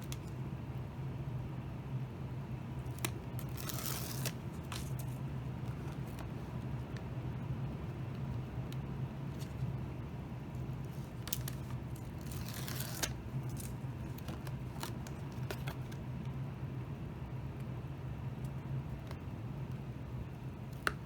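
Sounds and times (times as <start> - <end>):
tape backing peeling: 2.8 - 7.1, 10.6 - 16.0.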